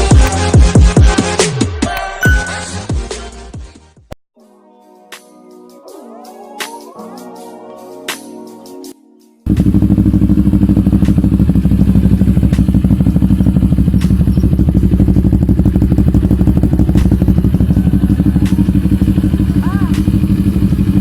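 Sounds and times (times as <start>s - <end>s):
intro music: 0.0s - 3.8s, 6.9s - 21.0s
motorcycle idling: 9.5s - 21.0s.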